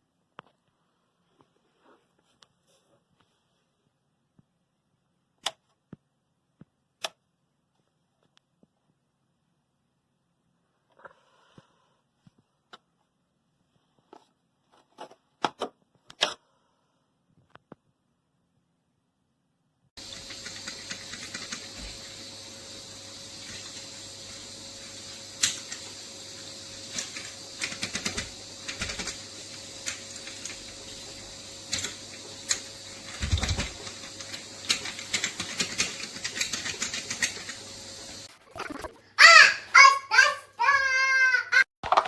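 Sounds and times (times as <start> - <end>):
steady hiss: 20.0 - 38.3
faint hum: 20.0 - 39.0.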